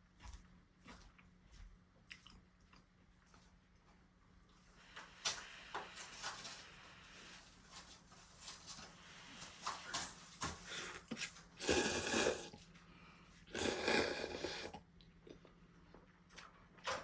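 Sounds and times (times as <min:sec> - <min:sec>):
noodles being slurped: 0:10.8 - 0:12.6, 0:13.5 - 0:14.8.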